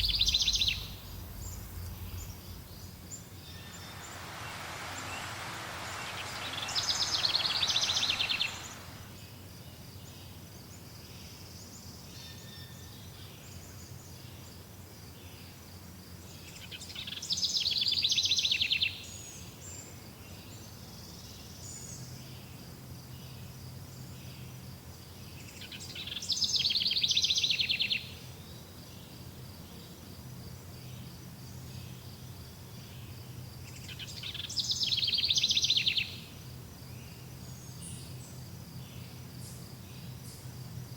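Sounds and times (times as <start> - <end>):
songbird trilling: 0.0 - 2.9
faint high-pitched pulsing buzz: 0.0 - 9.5.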